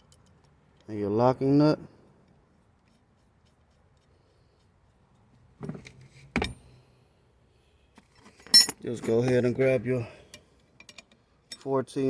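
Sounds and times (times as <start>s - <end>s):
small metal parts clinking: 0.0s - 0.9s, 8.3s - 8.9s.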